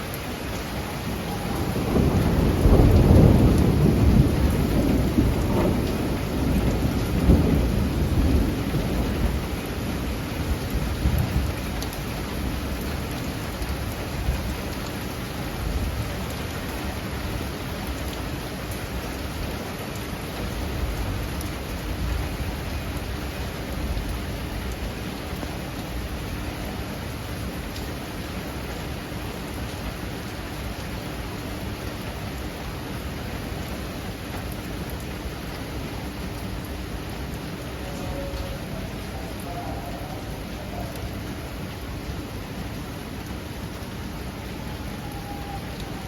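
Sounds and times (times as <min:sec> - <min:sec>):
heavy rain downpour: 0:00.0 - 0:46.0
thunder rumbling: 0:00.6 - 0:13.1, 0:36.3 - 0:46.0.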